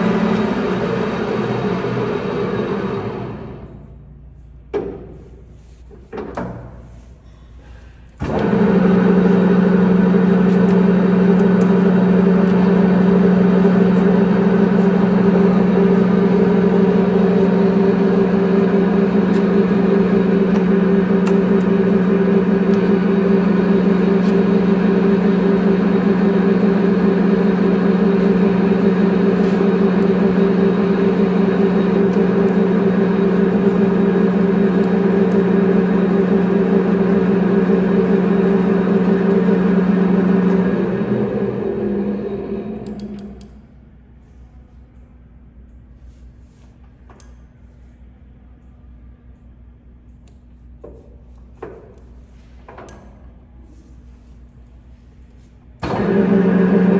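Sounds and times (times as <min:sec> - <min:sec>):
lathe gearbox whine: 0:00.0 - 0:03.7, 0:08.2 - 0:43.5, 0:55.8 - 0:56.9.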